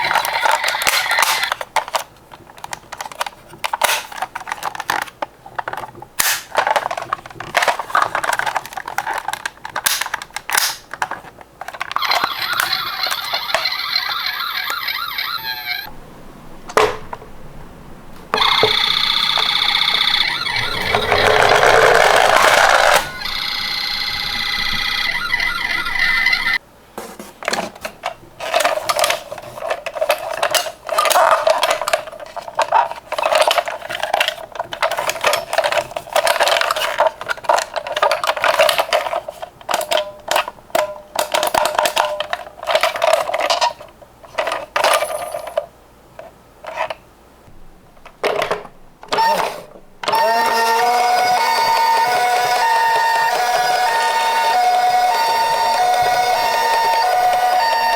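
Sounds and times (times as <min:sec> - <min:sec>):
toy electronic siren: 0:00.0 - 0:01.6, 0:12.0 - 0:15.9, 0:18.4 - 0:26.6, 0:49.2 - 0:57.9
toy cars clattering down a slope: 0:00.0 - 0:15.3, 0:18.4 - 0:26.6, 0:27.5 - 0:45.7, 0:48.2 - 0:57.9.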